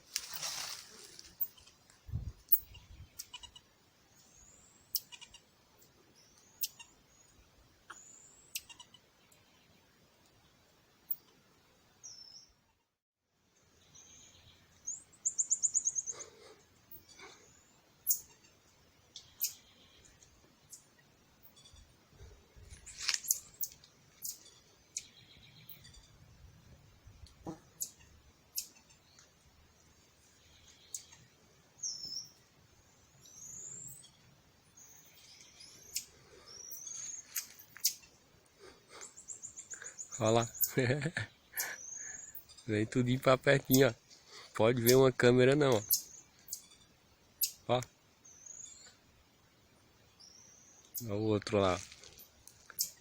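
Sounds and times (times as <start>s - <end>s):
marmosets chirping: 2.5s - 3.6s, 4.4s - 5.4s, 7.9s - 9.0s, 14.2s - 16.2s, 18.0s - 18.6s, 19.2s - 20.1s, 22.9s - 26.2s, 27.6s - 29.1s, 33.2s - 38.1s, 38.9s - 44.0s, 45.7s - 47.7s, 52.7s - 53.0s.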